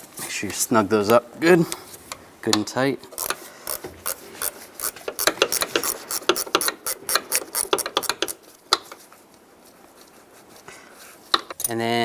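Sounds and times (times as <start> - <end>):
socket wrench ratchet clicking: 3.2 - 8.4.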